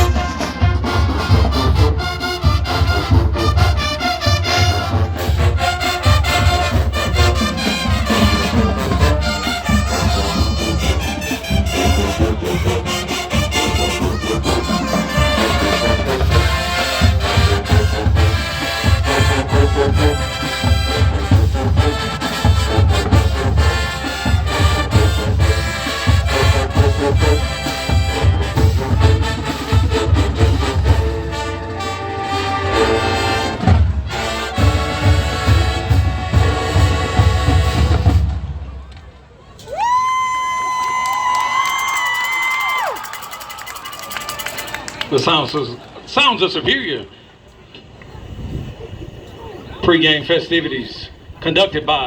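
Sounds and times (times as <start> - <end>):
pounding drum beat: 0.0 - 31.6
marching band brass: 0.0 - 39.2.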